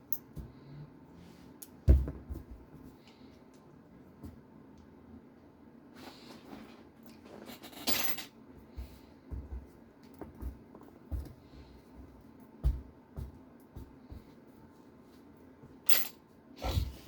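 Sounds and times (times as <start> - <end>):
metal parts and tools clinking: 7.5 - 8.4.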